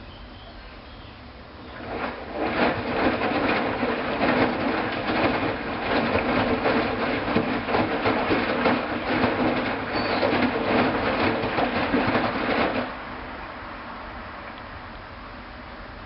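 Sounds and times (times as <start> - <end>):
washing machine drum churning: 1.6 - 13.6.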